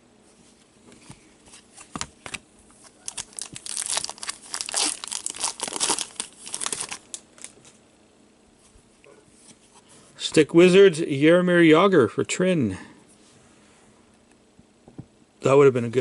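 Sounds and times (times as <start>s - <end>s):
plastic packaging crinkling: 1.5s - 7.8s.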